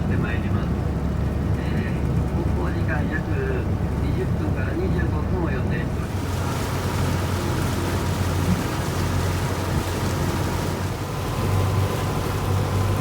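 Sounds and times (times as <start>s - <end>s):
boat engine droning: 0.0s - 13.0s
water rushing: 5.8s - 13.0s.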